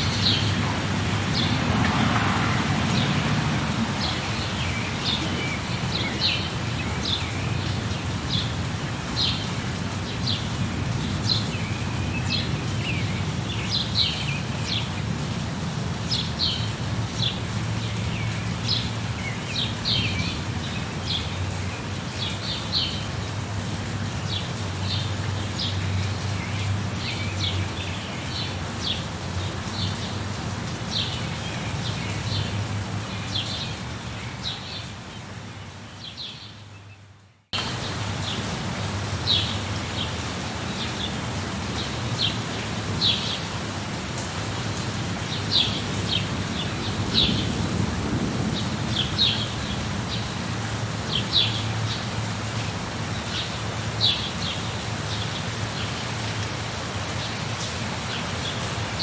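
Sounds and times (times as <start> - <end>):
steady rain: 0.0 - 59.0
small birds chirping: 3.8 - 15.1
low thunder rumble: 46.9 - 50.1.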